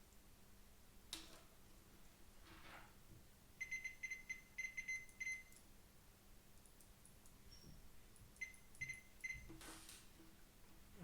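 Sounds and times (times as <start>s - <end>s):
multimeter continuity beeps: 3.6s - 5.6s, 8.4s - 9.5s.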